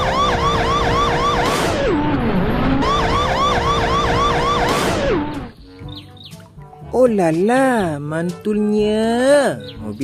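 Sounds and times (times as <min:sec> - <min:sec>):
police siren yelping: 0:00.0 - 0:05.5.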